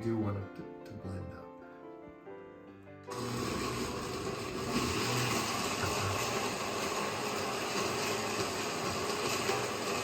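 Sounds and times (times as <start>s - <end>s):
blender running: 3.1s - 10.0s.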